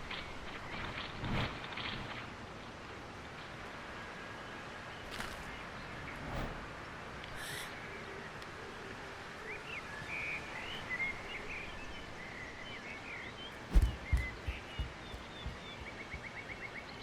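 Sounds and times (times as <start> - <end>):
ambient background noise: 0.0 - 17.0
small birds chirping: 9.5 - 17.0
low thumps: 13.6 - 16.2.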